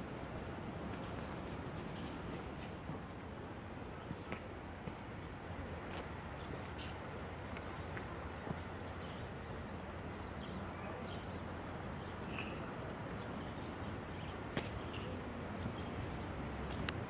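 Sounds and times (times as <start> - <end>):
outdoor background noise: 0.0 - 17.0.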